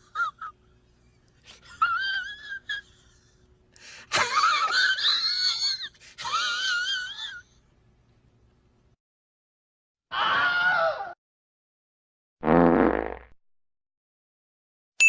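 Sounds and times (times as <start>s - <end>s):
high-pitched voice-like wail: 10.1s - 11.2s.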